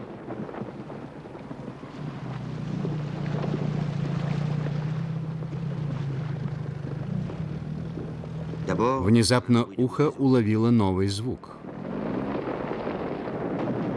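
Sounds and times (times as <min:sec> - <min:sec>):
wind noise on microphone: 0:00.0 - 0:03.8, 0:11.6 - 0:13.9
outboard motor humming: 0:01.1 - 0:09.0.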